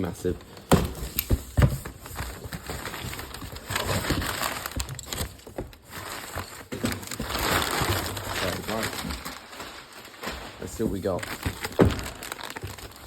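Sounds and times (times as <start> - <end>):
cardboard box crackling and scraping: 1.4 - 13.0.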